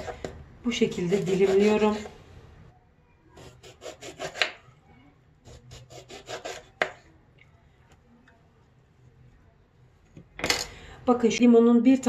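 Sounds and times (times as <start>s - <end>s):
knife sawing through lemon: 1.1s - 1.9s, 3.4s - 4.5s, 5.5s - 6.8s.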